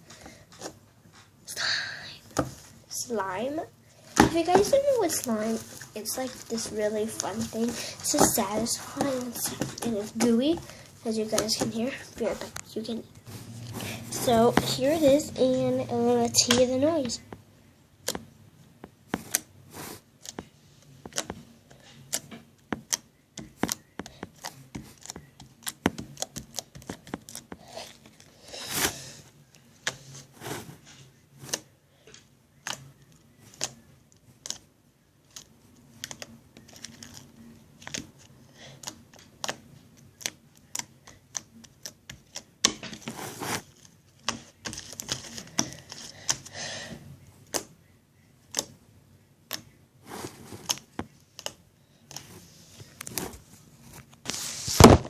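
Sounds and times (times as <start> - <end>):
slime squishing by hand: 2.5 - 17.2, 18.9 - 29.2, 32.5 - 46.6.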